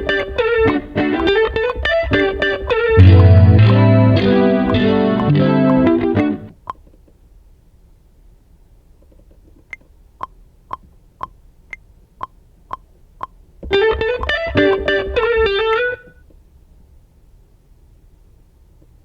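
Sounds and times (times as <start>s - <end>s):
metronome clicks: 0.0s - 6.8s, 9.7s - 16.1s
short melodic riff: 3.0s - 6.5s.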